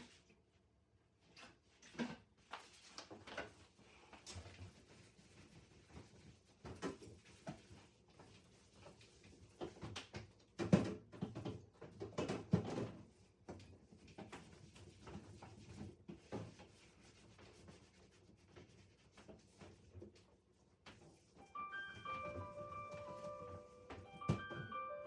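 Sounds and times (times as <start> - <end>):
knocks and clatter of shelves: 9.6 - 14.3, 24.0 - 24.8.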